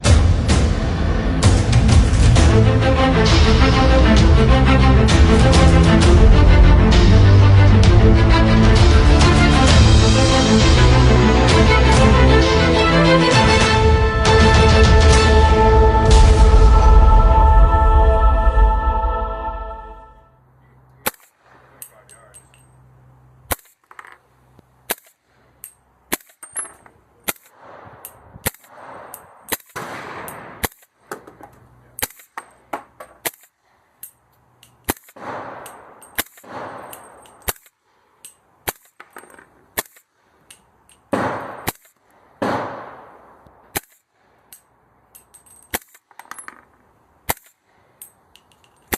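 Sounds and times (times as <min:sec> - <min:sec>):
suppressed rifle shots: 0:26.1 - 0:31.4, 0:34.9 - 0:37.8, 0:41.1 - 0:44.1
metallic clank of rifle action: 0:28.5 - 0:42.0, 0:43.8 - 0:48.9.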